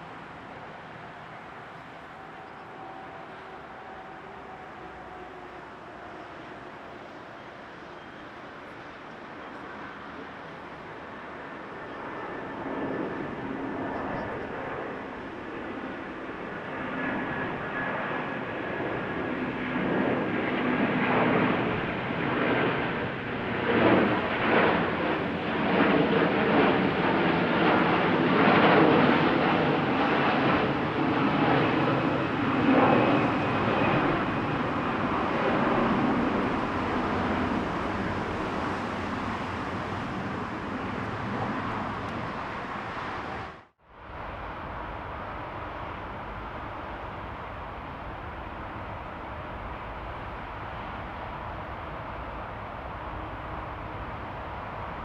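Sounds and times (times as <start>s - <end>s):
jet aircraft roar: 0.0s - 55.0s.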